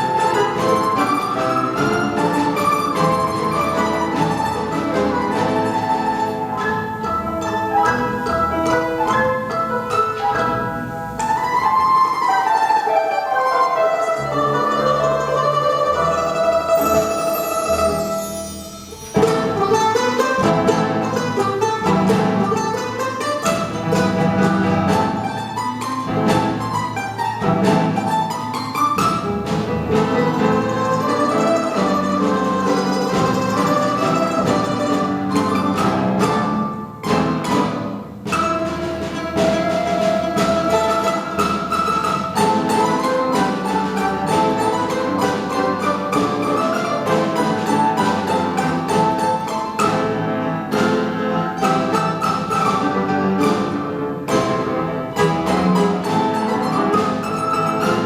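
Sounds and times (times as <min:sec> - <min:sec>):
folk instrument orchestra playing: 0:00.0 - 0:58.0
plucked strings: 0:00.0 - 0:58.0.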